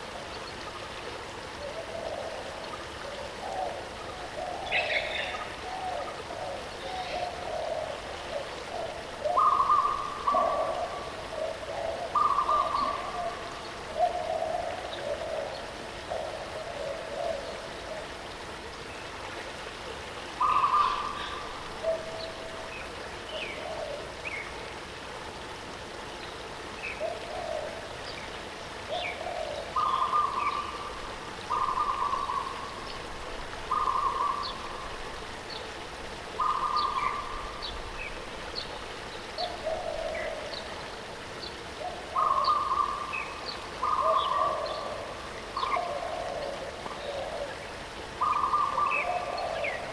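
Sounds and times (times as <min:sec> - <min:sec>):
low hooting bird calls: 0:01.6 - 0:18.1, 0:20.4 - 0:22.7, 0:28.9 - 0:33.1, 0:33.7 - 0:35.0, 0:36.4 - 0:38.2, 0:41.8 - 0:49.9.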